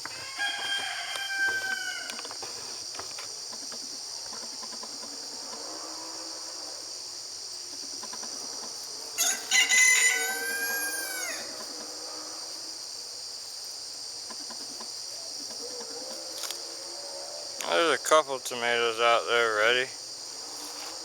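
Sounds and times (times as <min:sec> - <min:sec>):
rooster crowing: 0:00.0 - 0:02.4, 0:09.2 - 0:12.5
insects droning: 0:00.0 - 0:21.0.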